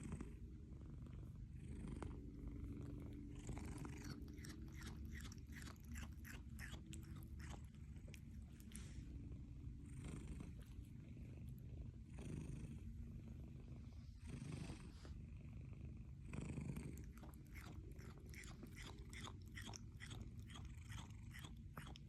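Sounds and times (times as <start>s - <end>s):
cat purring: 0.0s - 22.0s
cat chewing crunchily: 2.0s - 12.6s, 16.5s - 22.0s.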